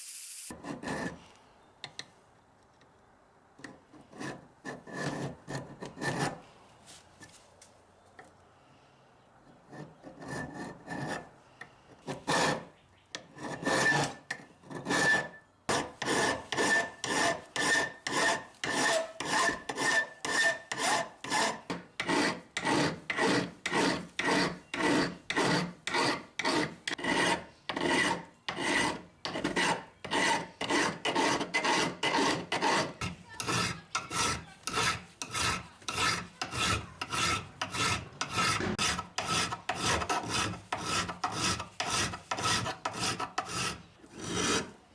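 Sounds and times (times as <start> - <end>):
hand file rasping on steel: 9.7 - 11.3, 12.0 - 44.8.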